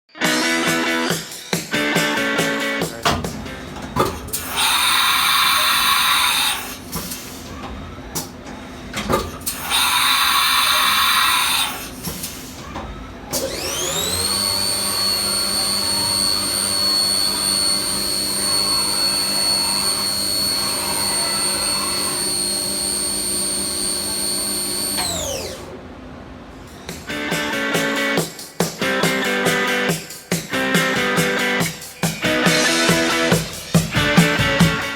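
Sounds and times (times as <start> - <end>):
hissing bursts: 1.1 - 7.6, 9.1 - 12.7
mill spindle whine: 2.6 - 27.1.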